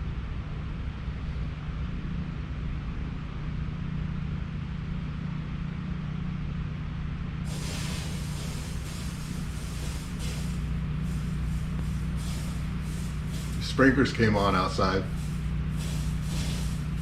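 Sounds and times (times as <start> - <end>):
low engine hum: 0.0 - 17.0
sprinklers hissing: 7.5 - 17.0.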